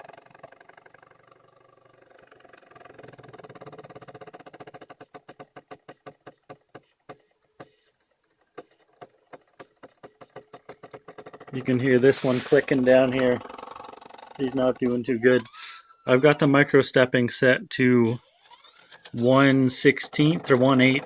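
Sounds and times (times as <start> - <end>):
motor clicking rhythmically: 0.0 - 15.5
stepper motors whining: 11.1 - 16.4, 18.0 - 21.0.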